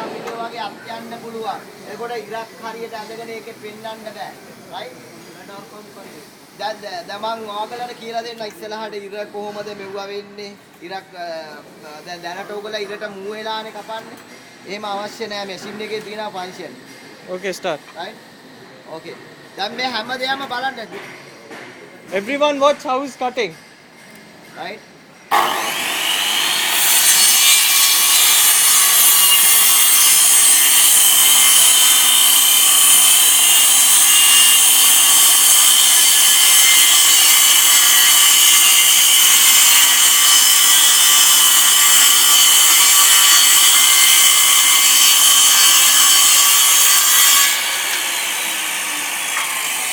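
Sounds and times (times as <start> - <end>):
circular saw cutting wood: 25.3 - 49.9.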